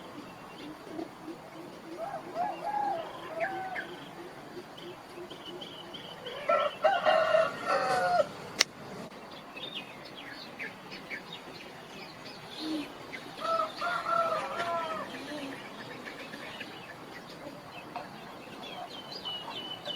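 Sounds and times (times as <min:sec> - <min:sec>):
small birds chirping: 0:00.0 - 0:19.9
rooster crowing: 0:02.0 - 0:04.1, 0:06.3 - 0:08.6, 0:13.4 - 0:15.4.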